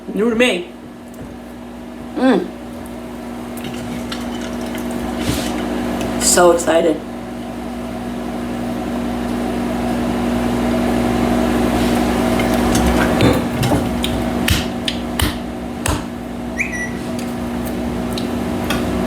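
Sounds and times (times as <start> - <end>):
microwave oven humming: 0.0 - 19.0
short electronic beep: 16.6 - 17.0.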